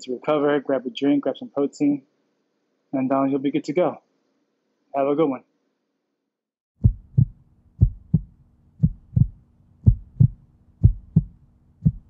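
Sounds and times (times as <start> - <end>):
heartbeat thumps: 6.8 - 12.0.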